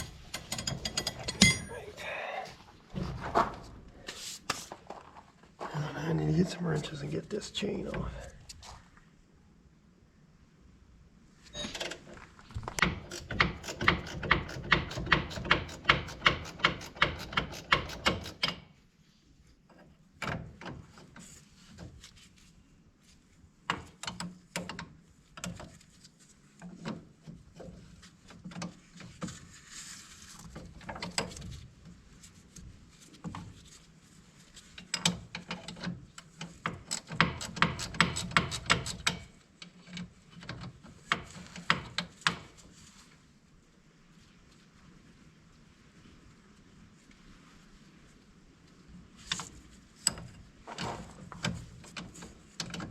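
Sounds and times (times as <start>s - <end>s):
ratchet wrench clicking: 12.8s - 18.5s.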